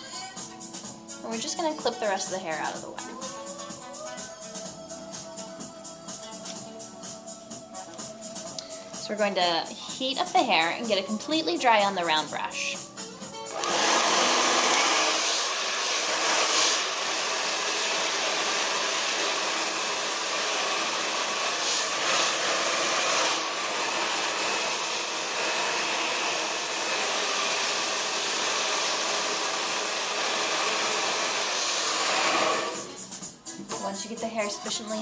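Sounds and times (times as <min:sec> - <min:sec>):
blow dryer running: 0:13.4 - 0:33.1.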